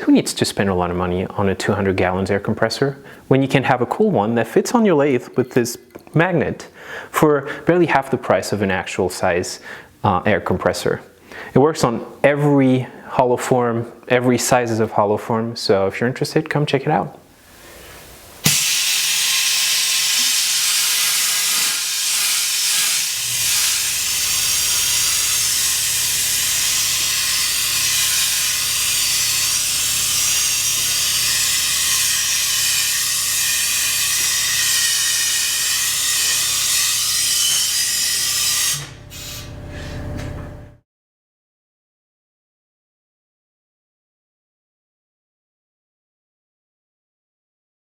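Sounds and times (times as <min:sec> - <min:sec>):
air compressor hissing: 0:18.4 - 0:35.5, 0:38.8 - 0:40.2.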